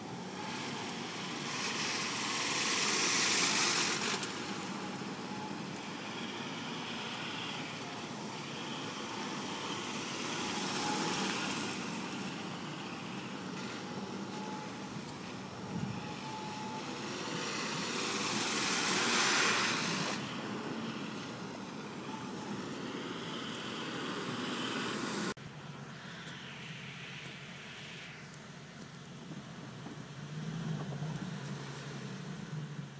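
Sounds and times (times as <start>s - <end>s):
vehicle running rush: 0.0s - 32.9s.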